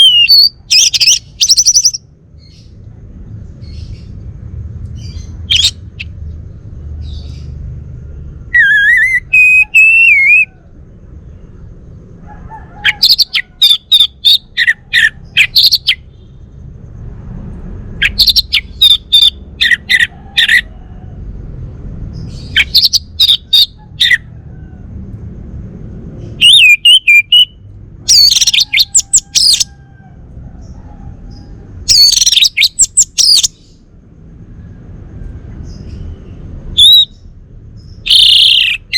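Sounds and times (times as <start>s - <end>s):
thrush singing whistled trills: 0.0s - 2.8s, 4.9s - 7.6s, 8.2s - 11.4s, 12.8s - 16.5s, 17.9s - 20.7s, 22.1s - 24.3s, 26.2s - 29.8s, 31.8s - 34.0s, 35.6s - 38.9s
low background rumble: 0.0s - 38.9s.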